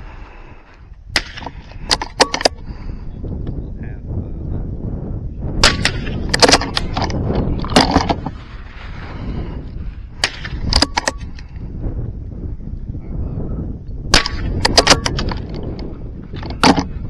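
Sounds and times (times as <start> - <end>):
rifle shots cracking: 1.1 - 2.5, 5.6 - 8.1, 10.2 - 11.2, 14.1 - 15.4.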